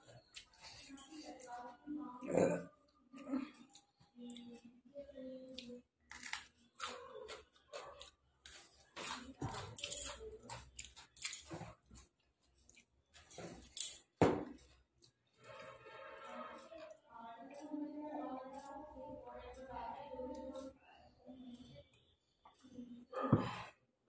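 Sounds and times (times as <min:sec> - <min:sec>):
chewing and mouth noises: 0:05.5 - 0:15.7.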